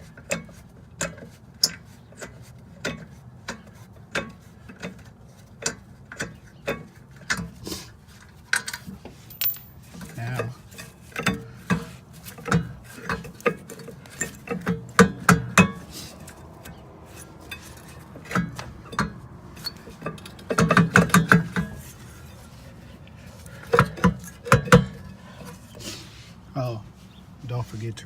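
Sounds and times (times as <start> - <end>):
metal tools clinking: 8.6 - 11.3.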